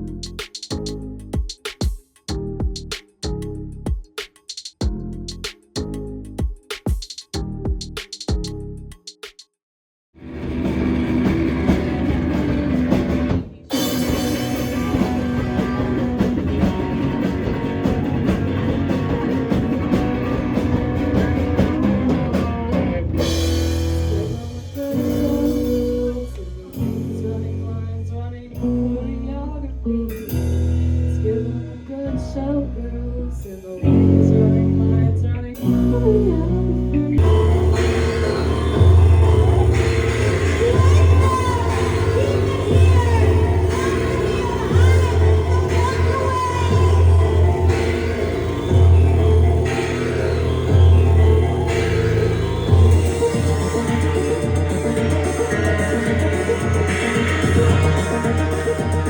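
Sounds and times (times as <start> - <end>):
live rock band playing: 10.2 - 27.2, 37.2 - 59.0
person singing: 24.1 - 30.3, 31.1 - 59.0.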